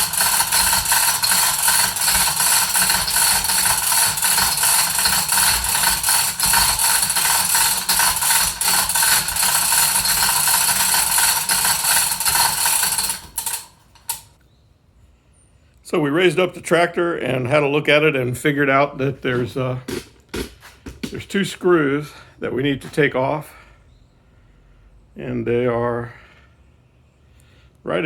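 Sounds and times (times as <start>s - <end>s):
chain hoist rattling: 0.0s - 14.4s
ratchet pawl clicking: 0.0s - 14.4s.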